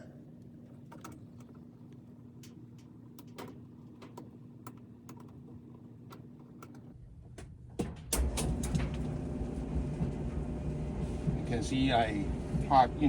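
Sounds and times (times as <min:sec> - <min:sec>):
faint steady hum: 0:00.0 - 0:07.2.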